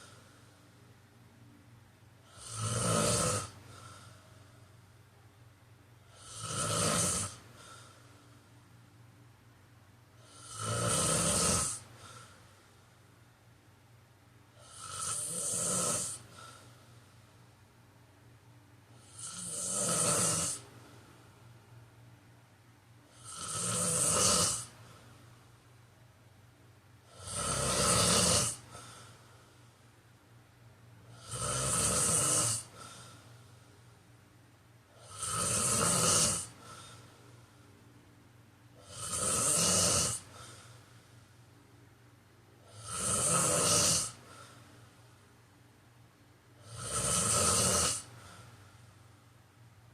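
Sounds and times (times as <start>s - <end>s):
man snoring: 2.2s - 4.2s, 6.1s - 8.0s, 10.2s - 12.3s, 14.6s - 16.7s, 18.9s - 20.7s, 23.1s - 24.8s, 27.0s - 29.2s, 31.0s - 33.5s, 34.9s - 37.1s, 38.8s - 40.8s, 42.6s - 44.6s, 46.6s - 48.5s.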